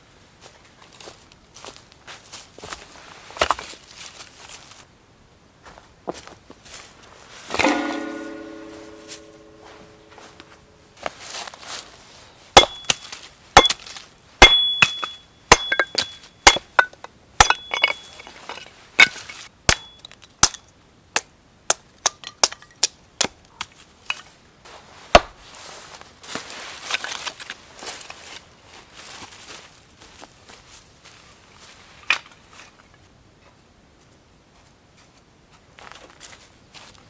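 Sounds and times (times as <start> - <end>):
tool chopping strikes: 7.5 - 10.2, 12.6 - 13.0, 13.6 - 13.8, 14.4 - 18.1, 25.2 - 25.4
short high ring: 7.5 - 10.8.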